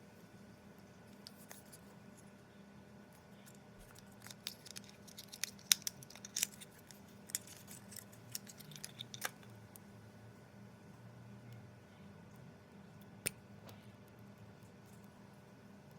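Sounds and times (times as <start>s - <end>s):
faint steady hum: 0.0s - 15.9s
packaging crinkling and clicking: 3.8s - 9.5s.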